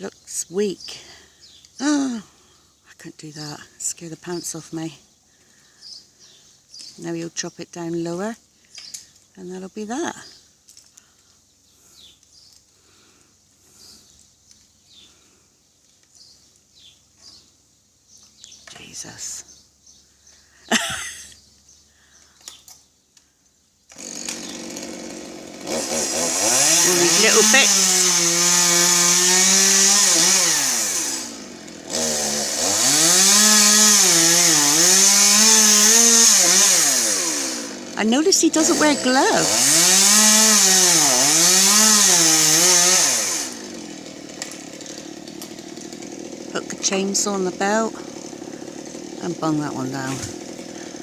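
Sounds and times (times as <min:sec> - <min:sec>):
chainsaw cutting wood: 0:23.9 - 0:51.0.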